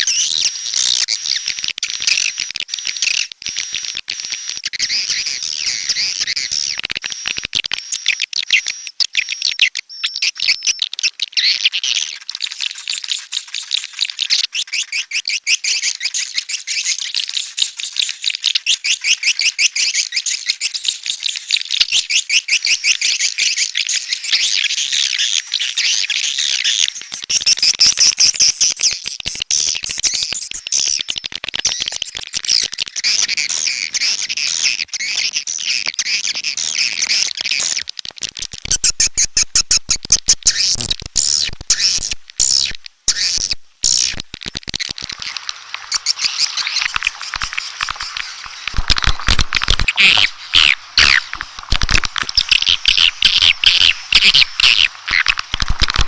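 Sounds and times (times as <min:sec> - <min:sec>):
swiftlets twittering: 0:44.9 - 0:55.9.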